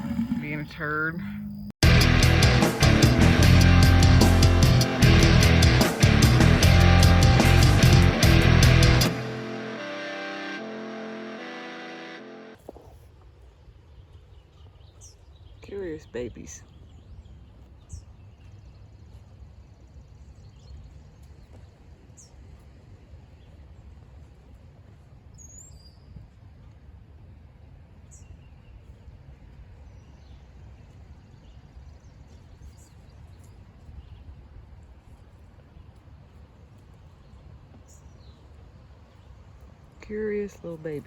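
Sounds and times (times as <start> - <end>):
low outdoor rumble: 0.0 - 10.0.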